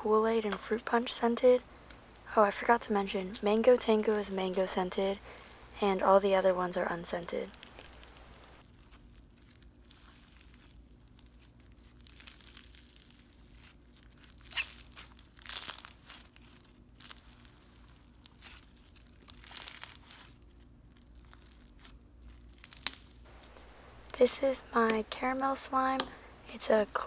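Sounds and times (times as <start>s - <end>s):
slime crackling as squeezed by hand: 7.4s - 23.6s.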